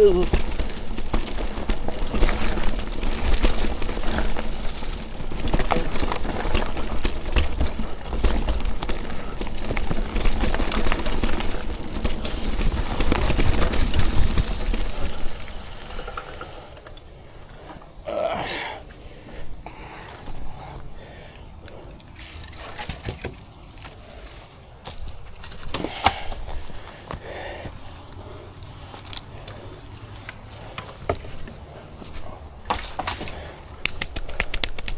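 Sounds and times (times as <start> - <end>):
bicycle tyre rumble: 0.0 - 34.9
bike rattling: 0.0 - 34.9.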